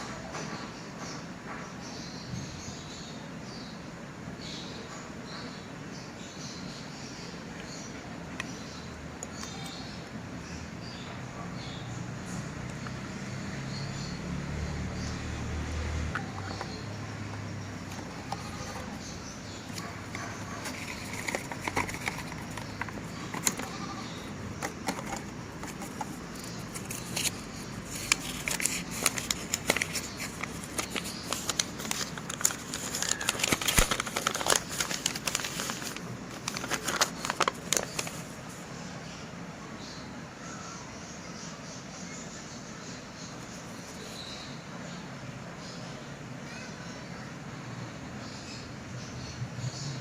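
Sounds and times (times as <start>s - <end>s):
crinkling and crackling handling noise: 16.1s - 38.6s.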